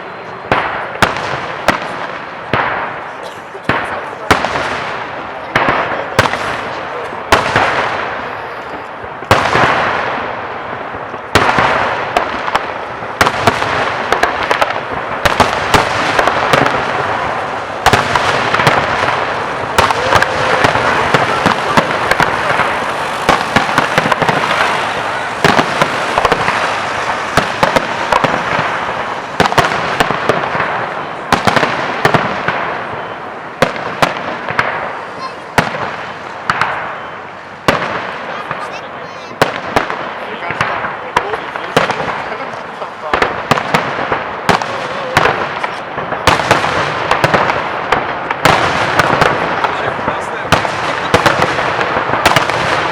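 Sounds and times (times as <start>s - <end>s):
fireworks crackle: 0.0s - 52.9s
fireworks shells bursting: 2.6s - 38.3s.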